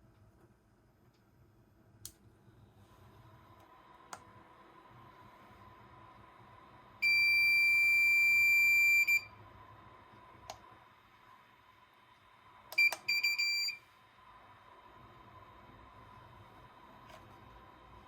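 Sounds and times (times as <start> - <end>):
high-pitched siren beep: 7.0 - 9.3, 12.8 - 13.8.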